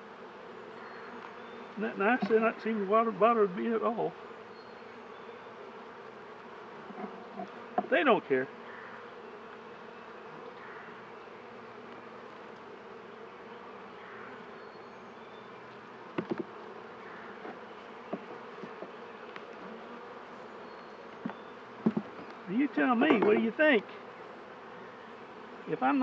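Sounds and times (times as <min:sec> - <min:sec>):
bees humming: 0:00.0 - 0:26.0
light knocks: 0:16.1 - 0:16.5, 0:21.2 - 0:22.3, 0:23.0 - 0:23.5.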